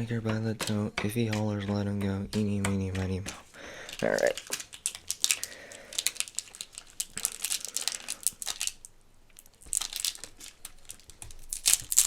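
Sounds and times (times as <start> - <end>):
candy wrapper crinkling and tearing: 3.8 - 12.0.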